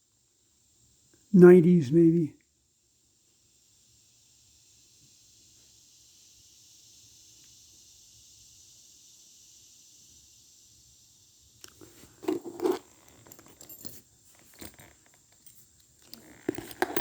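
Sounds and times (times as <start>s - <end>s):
faint hiss: 0.0s - 17.0s
handling rustling and scraping: 11.7s - 17.0s.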